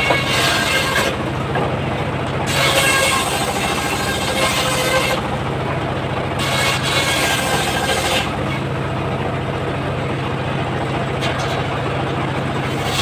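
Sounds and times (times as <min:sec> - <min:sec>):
circular saw cutting wood: 0:00.0 - 0:05.7, 0:06.3 - 0:08.7, 0:11.0 - 0:13.0.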